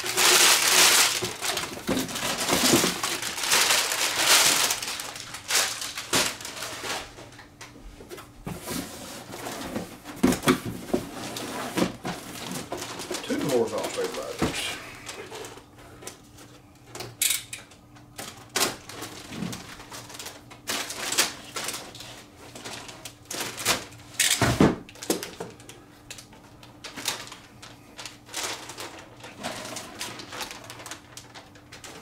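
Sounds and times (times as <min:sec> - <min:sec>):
plastic packaging rustling: 0:00.0 - 0:32.0
clicks and knocks of parts handled: 0:16.9 - 0:18.3, 0:24.2 - 0:25.6.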